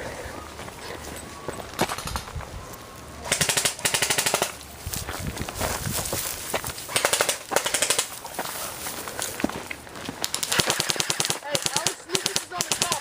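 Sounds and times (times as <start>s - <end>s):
airsoft guns full-auto firing: 3.3s - 4.6s, 6.9s - 8.1s, 10.2s - 13.0s.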